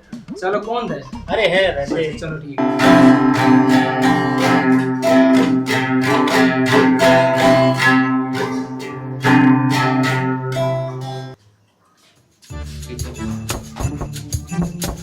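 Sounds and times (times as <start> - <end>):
strummed guitar chords: 2.6 - 11.4.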